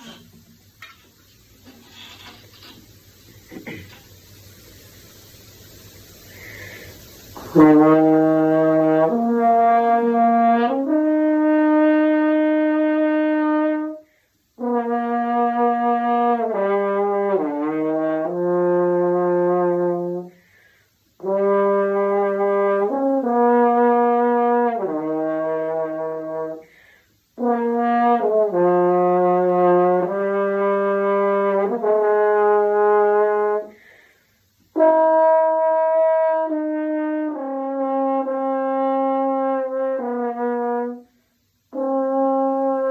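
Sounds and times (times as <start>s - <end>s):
french horn slow melody: 7.2s - 33.9s, 34.5s - 42.9s.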